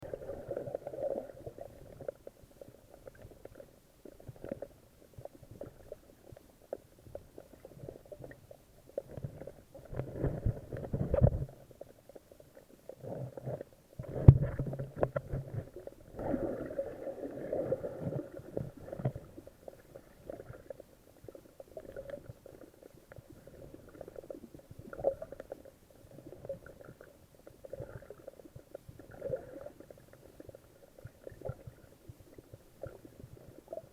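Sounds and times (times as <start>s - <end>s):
muffled sea water sloshing: 12.8s - 33.9s.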